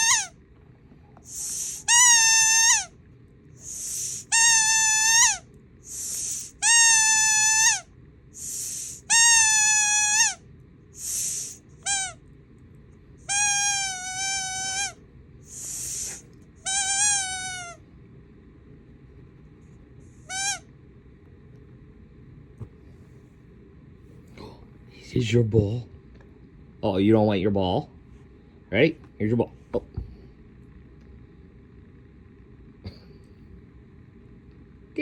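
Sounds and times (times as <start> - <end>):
squeaky toy ball hooting: 0.0 - 0.4, 1.3 - 2.9, 3.6 - 10.4, 11.0 - 12.2, 13.3 - 17.8, 20.2 - 20.7
short airy hiss: 1.3 - 2.1, 3.6 - 4.4, 5.9 - 6.6, 8.4 - 9.1, 11.0 - 11.6, 15.5 - 16.3.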